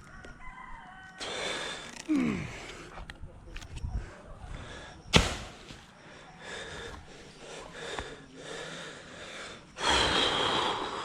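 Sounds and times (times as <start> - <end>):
person breathing hard: 6.2 - 11.0.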